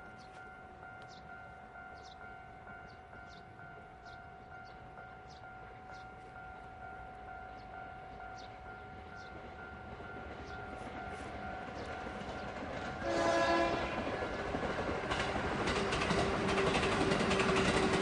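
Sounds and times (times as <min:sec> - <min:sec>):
level crossing warning bell ringing: 0:00.0 - 0:13.5
approaching train: 0:00.0 - 0:18.0.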